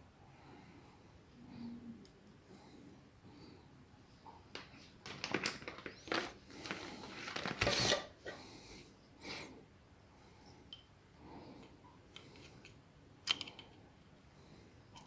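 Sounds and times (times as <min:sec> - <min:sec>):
small metal parts clicking: 0:13.2 - 0:13.8.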